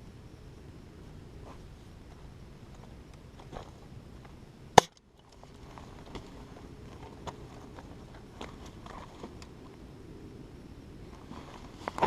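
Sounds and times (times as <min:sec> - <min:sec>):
rustling: 0:11.1 - 0:12.0.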